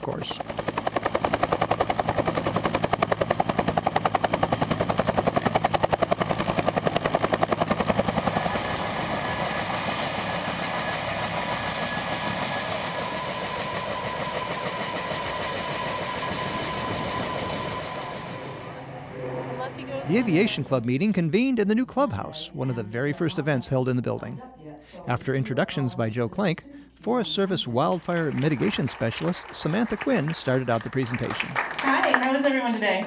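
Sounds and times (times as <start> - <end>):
turbine and rotor whine: 0.0 - 21.0.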